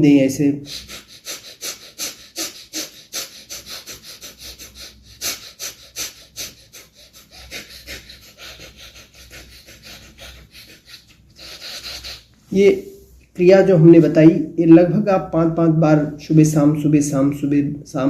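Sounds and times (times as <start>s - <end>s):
man breathing through nose: 0.7s - 12.4s.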